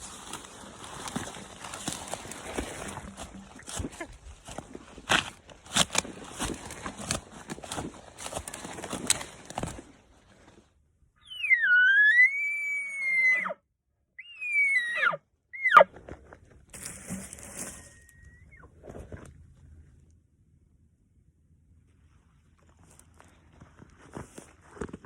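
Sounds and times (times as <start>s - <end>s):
footsteps in dry brush: 0.0s - 10.7s, 15.9s - 18.2s, 22.7s - 25.0s
elk bugling whistle: 11.2s - 13.6s, 14.2s - 15.9s.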